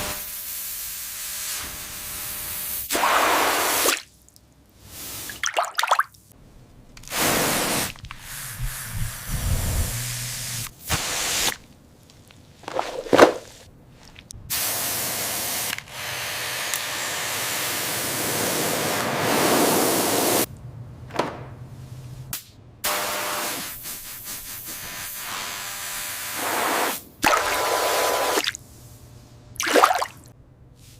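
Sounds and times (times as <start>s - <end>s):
hissing spray: 7.1s - 11.6s, 14.5s - 15.7s, 17.8s - 20.5s.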